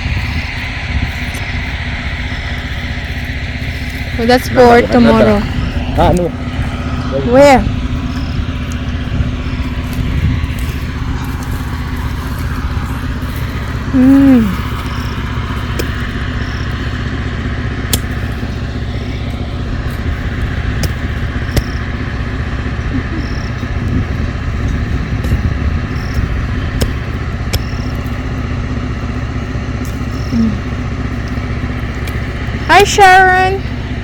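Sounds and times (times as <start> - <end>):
generator engine running: 0.0 - 34.0
sharp clicks: 20.8 - 21.9, 24.6 - 28.1.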